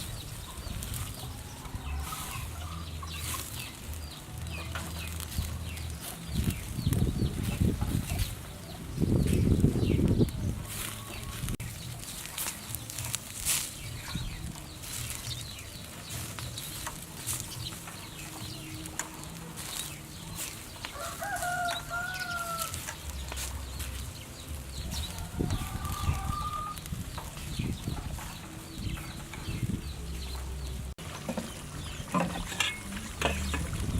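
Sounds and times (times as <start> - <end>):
rooster crowing: 20.9 - 22.8.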